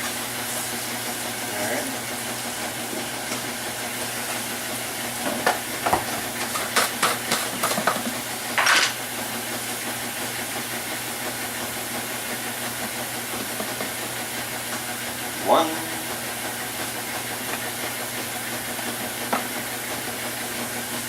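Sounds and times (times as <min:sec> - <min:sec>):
steady background hum: 0:15.2 - 0:16.9.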